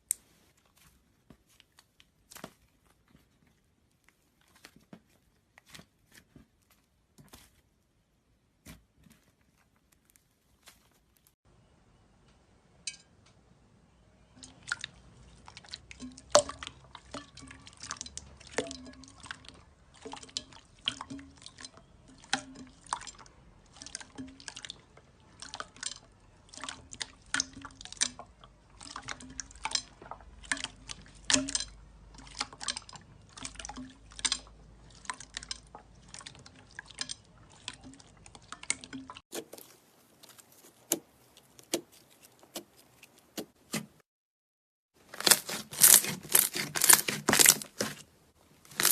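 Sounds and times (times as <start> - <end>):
slime squelching and clicking: 14.4 - 44.0, 45.0 - 48.1, 48.7 - 48.9.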